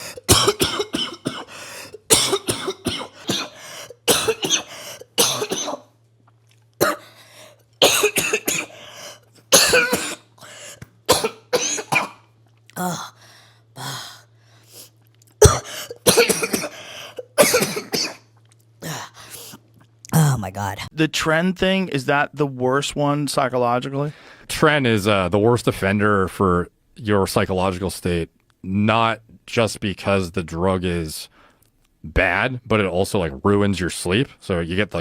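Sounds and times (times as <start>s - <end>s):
person coughing hard: 0.0s - 5.9s, 6.8s - 7.2s, 7.8s - 13.1s, 15.4s - 19.2s.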